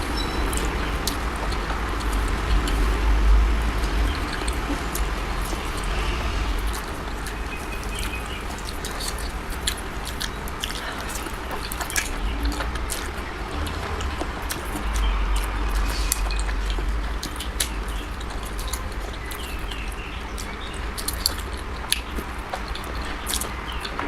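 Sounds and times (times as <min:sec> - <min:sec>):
person chewing and smacking food: 0:00.0 - 0:24.0
steady low hum: 0:00.0 - 0:24.0.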